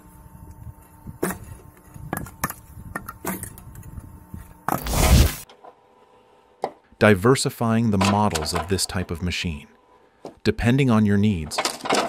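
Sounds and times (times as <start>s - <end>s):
loud burst: 4.8s - 5.4s
wooden knocks and clatter: 11.6s - 12.0s.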